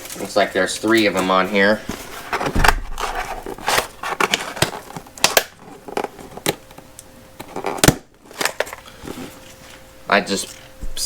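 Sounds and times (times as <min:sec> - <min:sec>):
cardboard box being handled: 0:01.8 - 0:05.0
seal labels being peeled: 0:02.3 - 0:09.1.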